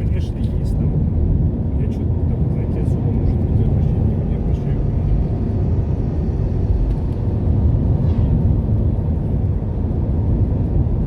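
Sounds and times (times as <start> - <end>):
car engine and tyre rumble: 0.0 - 11.0.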